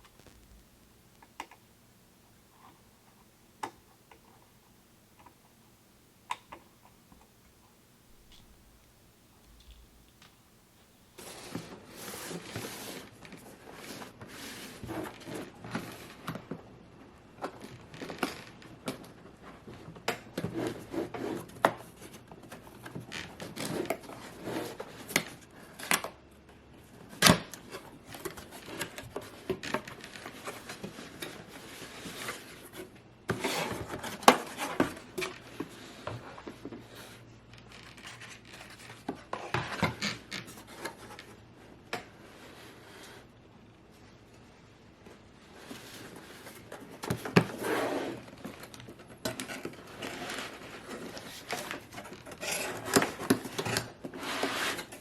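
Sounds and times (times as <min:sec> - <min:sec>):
rustling and scraping of parts: 0:00.0 - 0:55.0.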